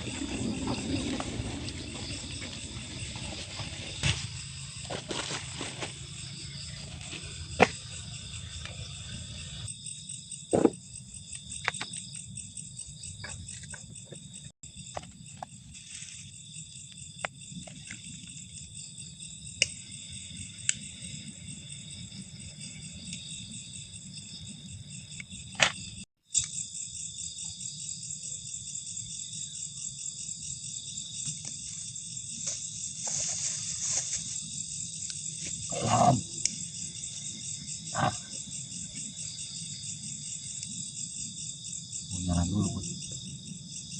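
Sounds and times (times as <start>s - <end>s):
crickets and insects trilling: 0.0s - 43.9s.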